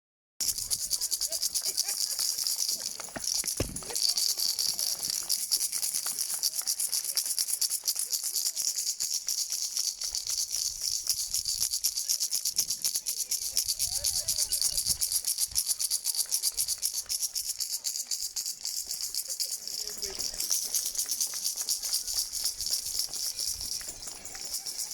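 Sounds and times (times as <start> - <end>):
hand rattle clatter: 0.4 - 24.9.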